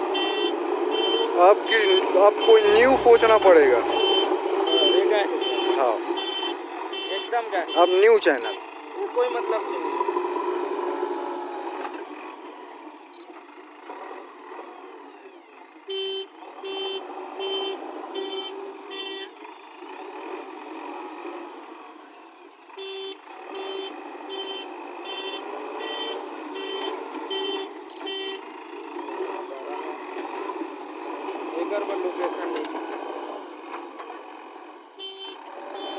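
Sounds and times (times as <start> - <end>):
background noise: 0.0 - 9.0.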